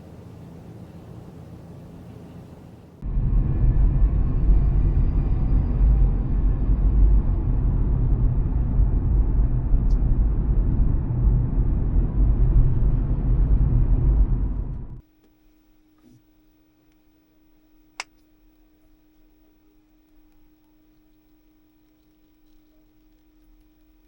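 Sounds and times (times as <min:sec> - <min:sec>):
van engine and road rumble: 0:00.0 - 0:15.0.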